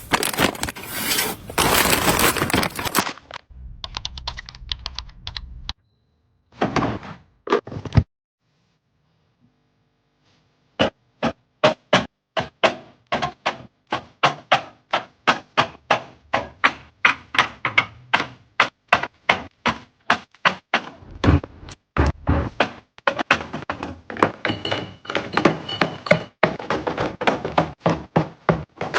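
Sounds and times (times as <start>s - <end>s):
items tapping as set down: 24.1s - 26.9s.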